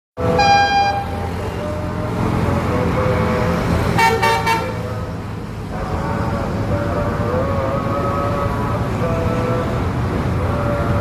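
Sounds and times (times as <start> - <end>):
bus horn toots: 0.2 - 1.2, 3.9 - 4.9
bus engine rumbling: 0.2 - 11.0
wavering held horn tone: 0.3 - 1.2.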